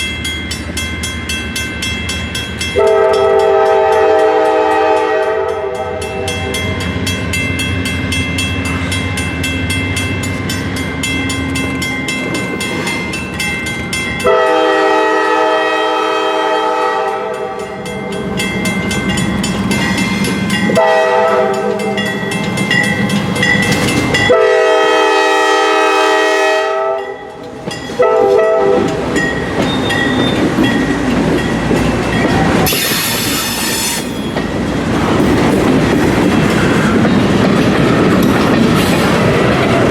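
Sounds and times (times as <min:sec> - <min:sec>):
train wheels clacking on rails: 0:00.0 - 0:15.5, 0:16.2 - 0:24.8, 0:26.9 - 0:39.9
locomotive air horn blasts: 0:02.8 - 0:06.7, 0:14.2 - 0:17.8, 0:20.7 - 0:22.0, 0:24.3 - 0:27.2, 0:28.0 - 0:28.9
locomotive engine rumble: 0:27.2 - 0:39.9.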